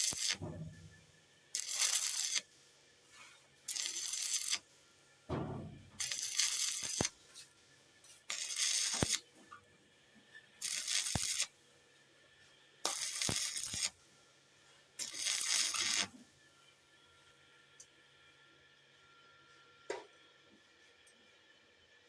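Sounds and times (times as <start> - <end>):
welding arc crackling: 0.0 - 1.0, 1.6 - 2.5, 3.7 - 4.6, 6.0 - 7.1, 8.3 - 9.2, 10.6 - 11.5, 12.8 - 13.9, 15.0 - 16.1.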